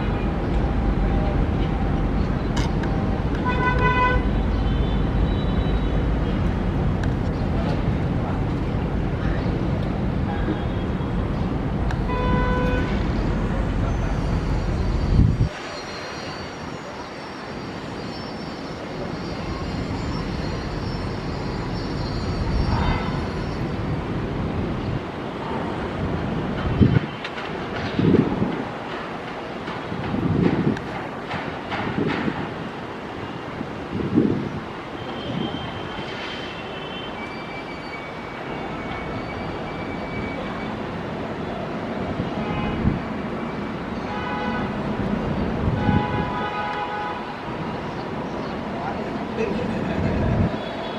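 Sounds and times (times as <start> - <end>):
high turbine whine: 4.2 - 25.4
jet engines rumbling: 5.9 - 15.8.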